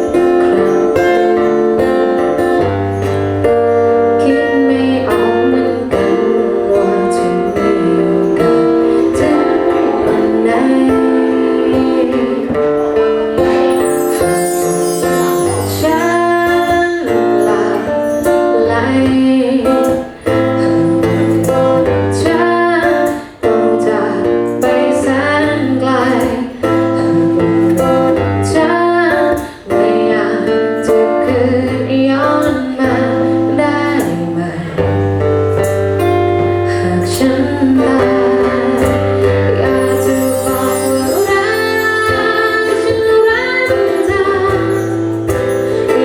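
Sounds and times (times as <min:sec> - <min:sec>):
strummed guitar: 0:00.0 - 0:46.0
woman singing: 0:00.0 - 0:46.0.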